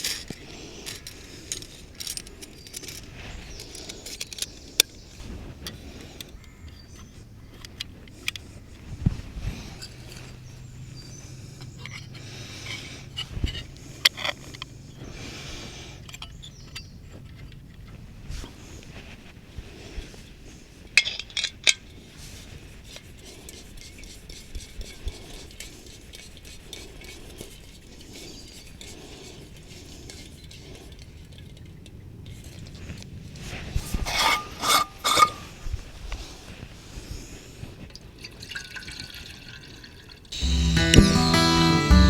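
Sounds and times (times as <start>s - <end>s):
metal scraping and rubbing: 33.8s - 35.5s.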